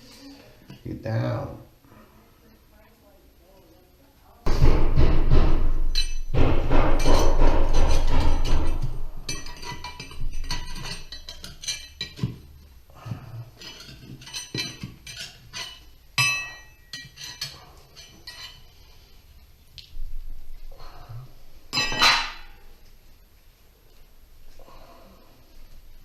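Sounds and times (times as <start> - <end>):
ringing metallic clank: 5.8 - 9.8, 16.2 - 17.1
concrete and metal pieces clattering: 5.8 - 12.4, 13.6 - 18.6, 21.7 - 22.5.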